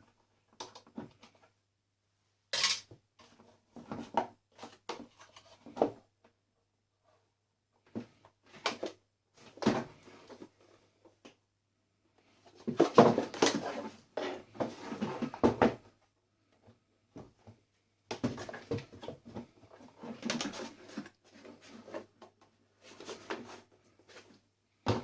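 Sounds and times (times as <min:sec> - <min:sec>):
coffee maker parts clattering: 0:02.6 - 0:02.8.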